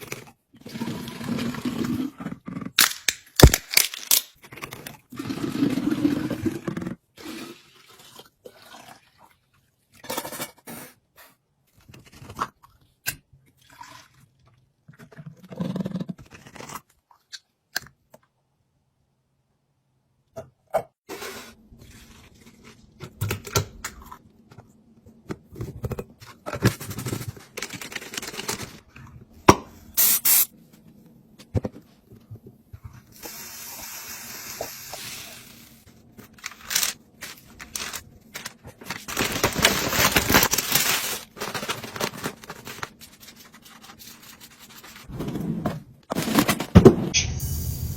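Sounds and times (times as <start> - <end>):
packaging scraping and rustling: 36.1 - 45.1.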